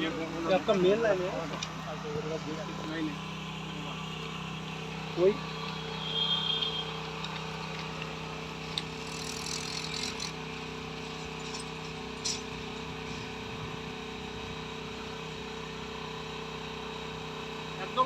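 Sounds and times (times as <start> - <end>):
engine running steadily: 0.0 - 18.0.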